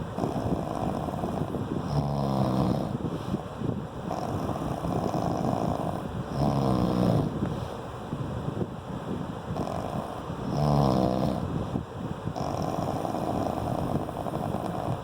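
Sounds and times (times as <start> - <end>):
person snoring: 0.2 - 3.0, 4.1 - 7.3, 9.6 - 11.5, 12.4 - 15.0.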